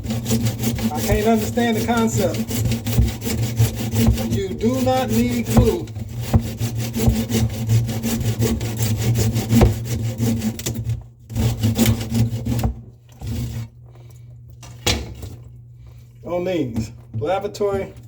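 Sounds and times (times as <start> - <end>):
saw cutting pipe: 0.0 - 13.7.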